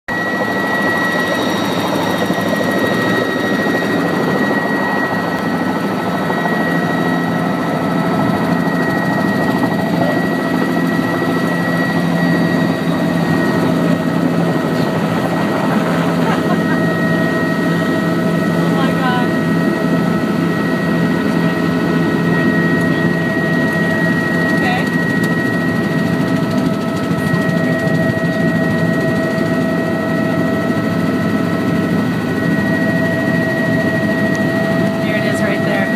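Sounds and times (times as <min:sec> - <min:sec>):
helicopter engine and rotor noise: 0:00.1 - 0:35.9.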